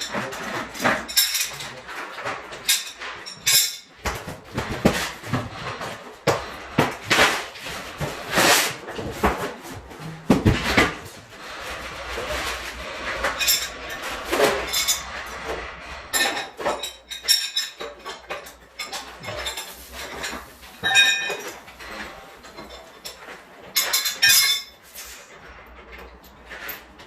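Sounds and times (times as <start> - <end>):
metal tools clinking and knocking: 0.0 - 6.4, 16.1 - 27.0.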